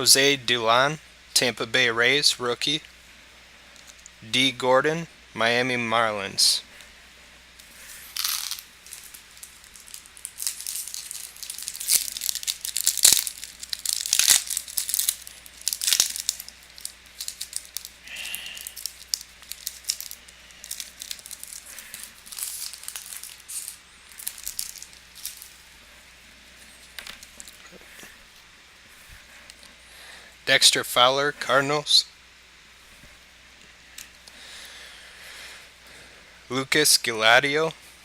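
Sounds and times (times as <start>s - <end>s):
cards being handled: 7.6s - 25.6s
foil wrappers crinkling and tearing: 7.6s - 25.8s.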